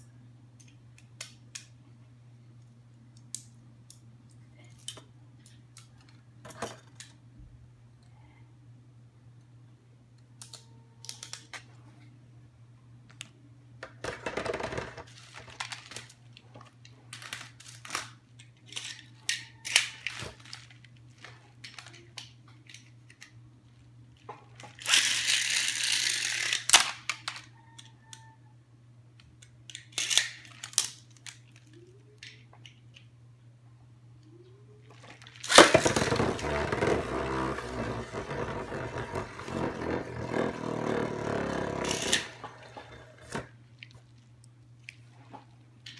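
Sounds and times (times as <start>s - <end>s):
packaging tearing: 35.2s - 43.4s.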